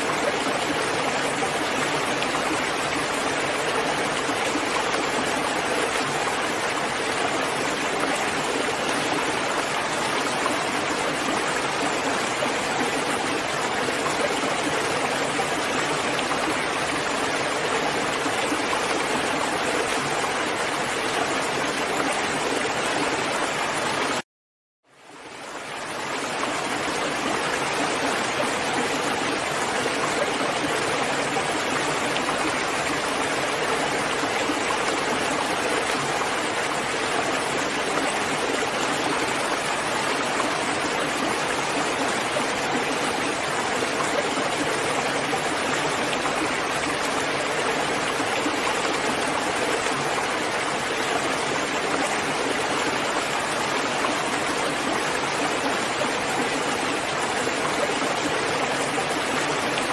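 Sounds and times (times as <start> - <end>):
heavy rain: 0.0 - 24.2.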